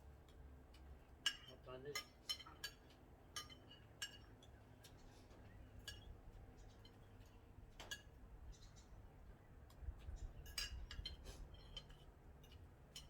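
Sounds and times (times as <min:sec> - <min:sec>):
cutlery clinking on plates: 0:01.3 - 0:04.6, 0:05.8 - 0:06.1, 0:10.4 - 0:13.0.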